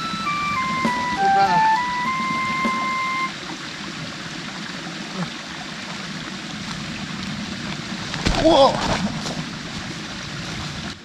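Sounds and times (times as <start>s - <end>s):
held electronic music note: 0.0s - 3.3s.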